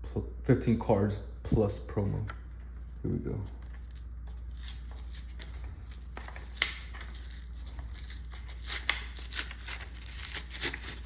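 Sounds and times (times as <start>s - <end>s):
steady low hum: 0.0s - 11.0s
packaging tearing and crinkling: 3.6s - 11.0s.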